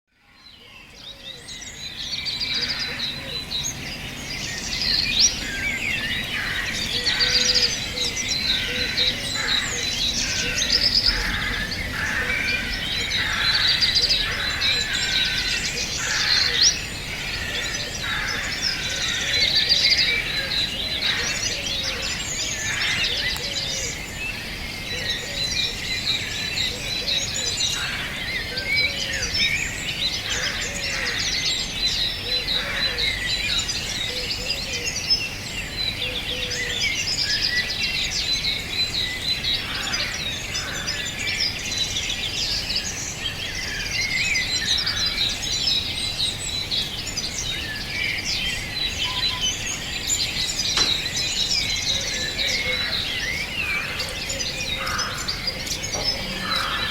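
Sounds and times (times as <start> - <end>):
songbirds singing and chirping: 0.1 - 56.9
low outdoor background hiss: 0.2 - 56.9.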